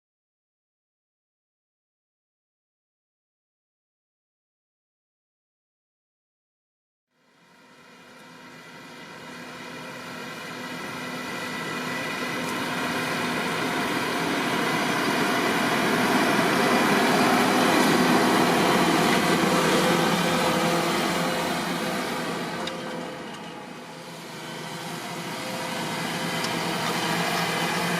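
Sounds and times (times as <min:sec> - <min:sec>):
tractor diesel engine running: 0:07.9 - 0:27.9.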